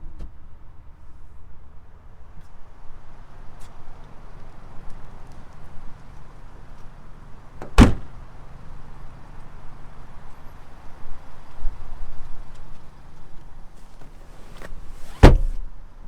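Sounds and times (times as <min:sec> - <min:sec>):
car door thud: 0:07.6 - 0:08.1, 0:13.8 - 0:15.7.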